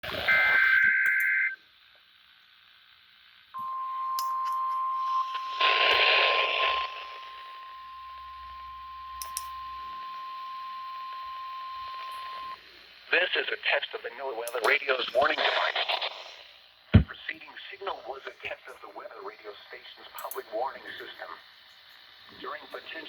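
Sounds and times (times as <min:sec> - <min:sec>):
two-tone data burst: 0:00.2 - 0:01.6, 0:03.6 - 0:12.6
steady warning alarm tone: 0:03.6 - 0:12.7
loud burst of noise: 0:05.0 - 0:07.4, 0:15.0 - 0:17.2.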